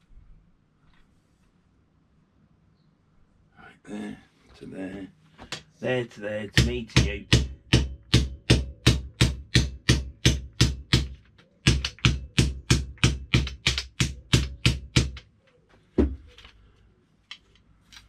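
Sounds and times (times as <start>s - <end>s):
hammer blows on metal pole: 6.5s - 15.2s.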